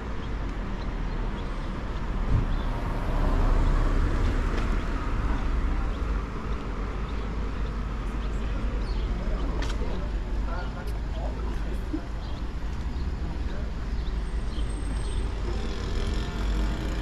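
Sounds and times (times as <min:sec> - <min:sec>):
car passing: 0:02.1 - 0:07.1.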